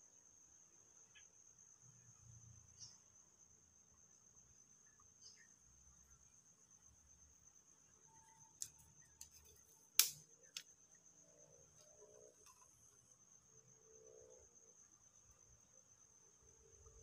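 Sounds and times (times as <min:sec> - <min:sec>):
insects droning: 0:00.0 - 0:17.0
sharp clicks: 0:10.0 - 0:10.7.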